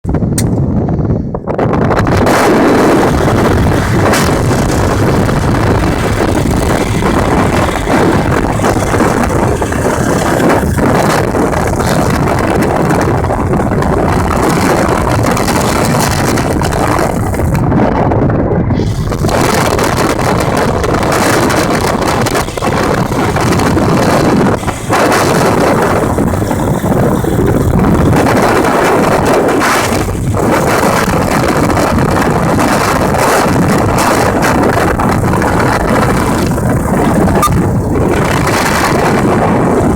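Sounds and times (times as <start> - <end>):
wind buffeting microphone: 0.0 - 39.9
aircraft engine running: 2.0 - 18.0, 18.6 - 39.9.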